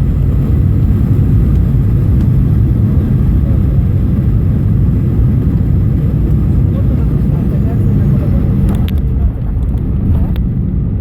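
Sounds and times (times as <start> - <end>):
airplane cabin rumble: 0.0 - 11.0.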